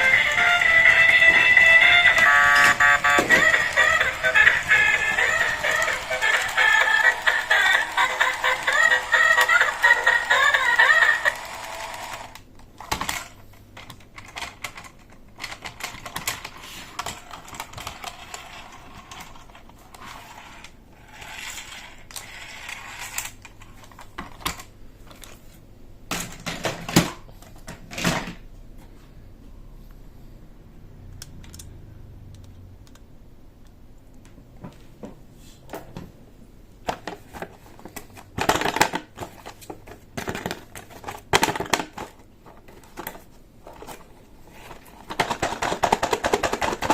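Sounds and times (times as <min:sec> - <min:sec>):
hard plastic parts clicking: 0:00.0 - 0:18.4, 0:36.9 - 0:46.9.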